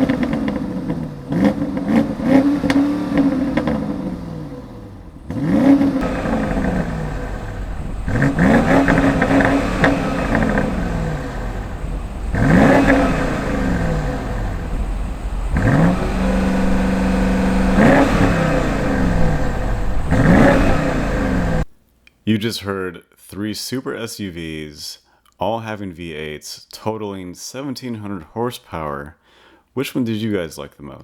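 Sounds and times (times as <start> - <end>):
car engine revving: 0.0 - 21.7.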